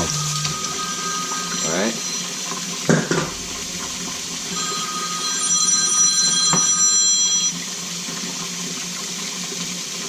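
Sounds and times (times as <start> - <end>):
high ringing tone: 0.0 - 7.9
tap water running: 0.0 - 10.0.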